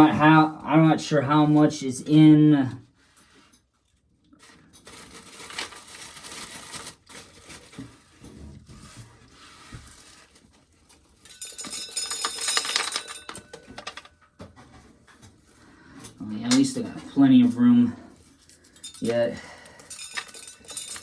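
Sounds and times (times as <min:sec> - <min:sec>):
dry corn kernels rattling: 0:18.7 - 0:21.0.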